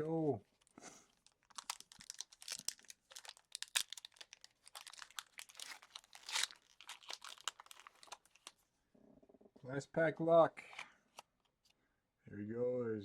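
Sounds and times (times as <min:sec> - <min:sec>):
foil wrapper crinkling: 0:00.6 - 0:08.6
foil tearing: 0:01.5 - 0:08.2.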